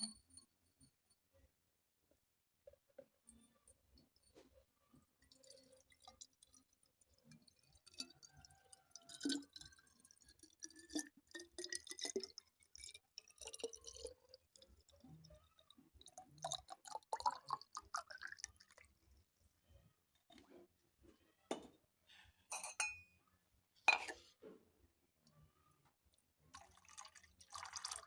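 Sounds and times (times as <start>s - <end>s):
water pouring into a glass: 5.0s - 19.0s, 26.5s - 28.0s
water dripping: 5.2s - 19.0s
glass clinks: 22.5s - 23.1s, 23.9s - 24.2s.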